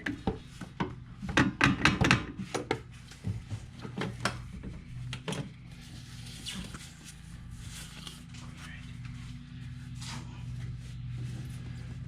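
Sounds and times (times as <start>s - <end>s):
tools knocking and clunking: 0.0s - 5.4s
low steady hum: 0.0s - 12.0s.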